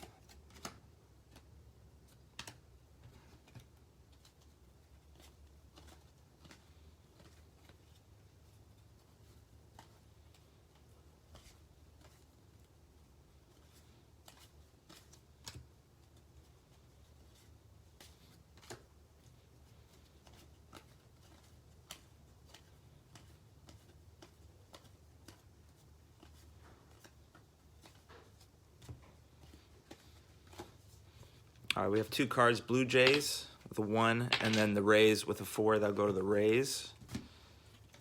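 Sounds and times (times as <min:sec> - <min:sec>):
trading cards clicking and tapping: 0:00.0 - 0:04.5, 0:19.9 - 0:38.0.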